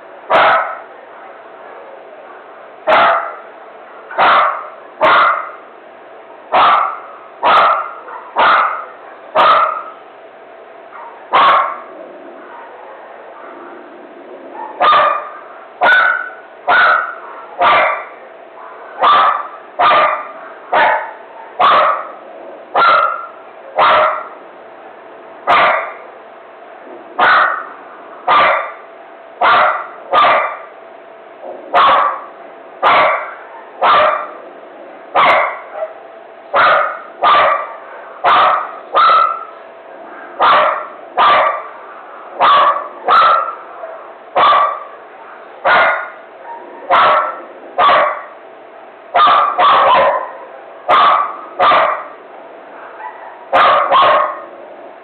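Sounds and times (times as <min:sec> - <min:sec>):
dog barking: 0:00.3 - 0:00.9, 0:02.9 - 0:03.5, 0:04.1 - 0:05.6, 0:06.5 - 0:10.0, 0:10.9 - 0:13.6, 0:14.6 - 0:24.4, 0:25.5 - 0:26.1, 0:27.2 - 0:27.7, 0:28.3 - 0:28.8, 0:29.4 - 0:30.7, 0:31.7 - 0:34.4, 0:35.2 - 0:39.5, 0:40.1 - 0:41.8, 0:42.4 - 0:48.4, 0:49.2 - 0:52.2, 0:52.8 - 0:54.5.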